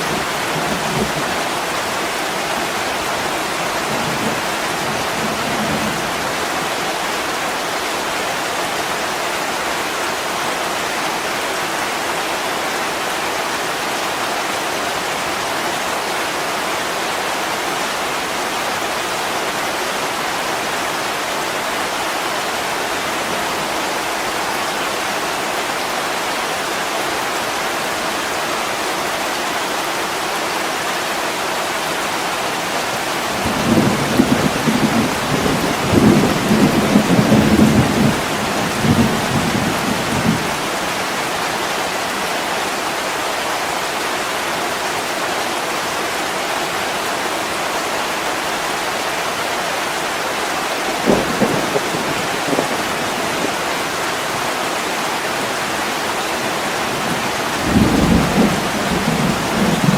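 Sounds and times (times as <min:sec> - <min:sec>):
heavy rain on a window: 0:00.0 - 0:59.9
thunder rumbling: 0:33.3 - 0:40.8, 0:51.0 - 0:54.4, 0:56.4 - 0:59.9.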